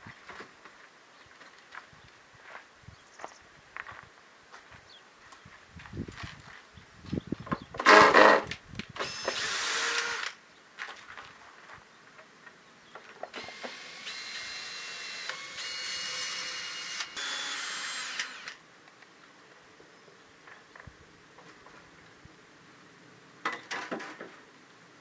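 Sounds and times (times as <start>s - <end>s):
power tool motor whining: 9.0s - 10.4s, 13.3s - 18.6s.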